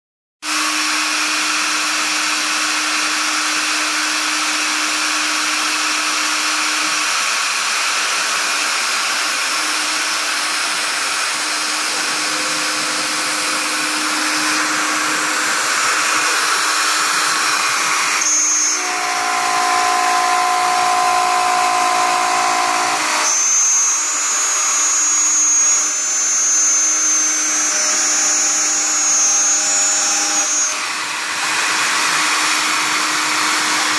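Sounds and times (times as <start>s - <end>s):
router spindle cutting metal panel: 0.4s - 33.9s.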